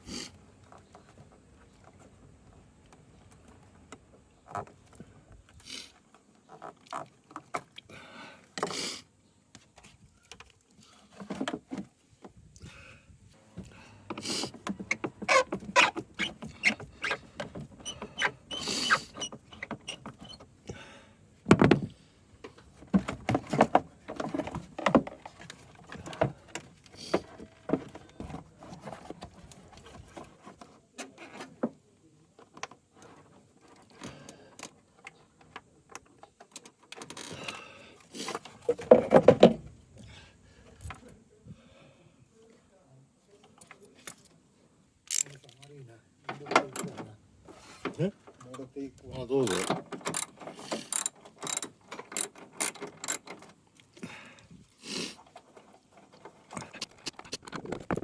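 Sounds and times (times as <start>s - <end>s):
metallic clicks and rattles of tools: 45.1s - 45.8s, 49.4s - 54.0s, 56.5s - 58.0s.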